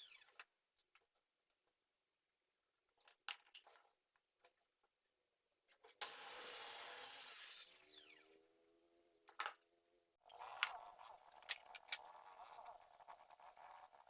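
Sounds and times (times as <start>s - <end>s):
power tool winding down: 6.0s - 8.4s.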